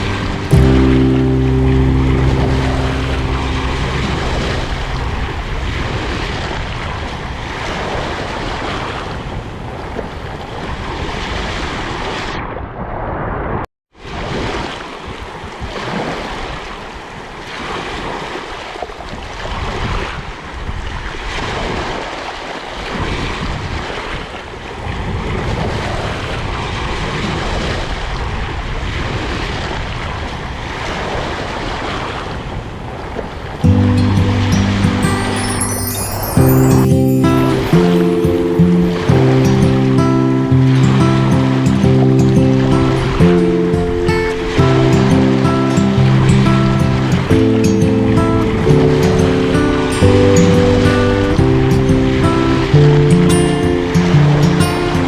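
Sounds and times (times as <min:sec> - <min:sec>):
sea waves washing in: 0:00.0 - 0:06.7, 0:33.6 - 0:55.0.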